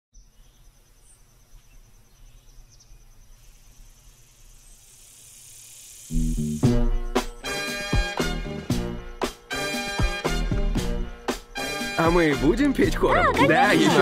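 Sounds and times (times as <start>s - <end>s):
insect trill: 0.2s - 14.0s
loud upbeat music: 6.6s - 14.0s.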